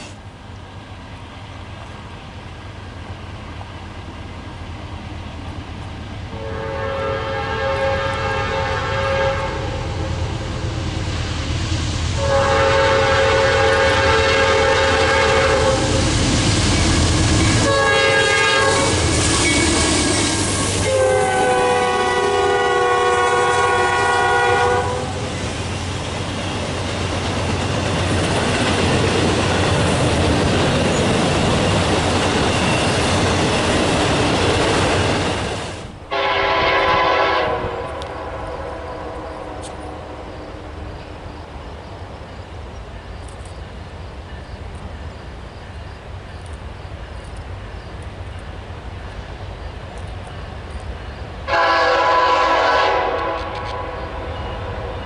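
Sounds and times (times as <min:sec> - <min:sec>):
train rumbling on rails: 0:00.0 - 0:55.0
locomotive air horn blasts: 0:06.3 - 0:09.9, 0:12.2 - 0:16.0, 0:17.6 - 0:19.8, 0:20.8 - 0:25.2, 0:36.1 - 0:40.3, 0:51.5 - 0:55.0.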